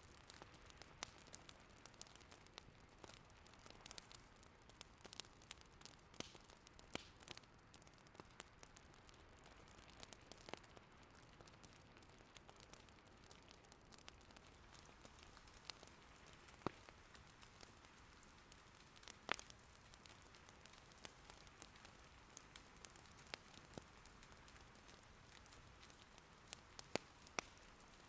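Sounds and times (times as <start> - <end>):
wood fire crackling and popping: 0.0 - 28.0
faint rain: 7.6 - 28.0.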